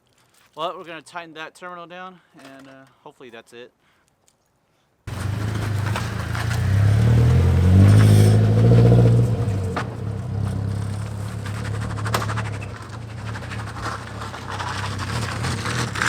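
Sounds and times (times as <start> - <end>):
car engine revving: 5.1 - 16.0.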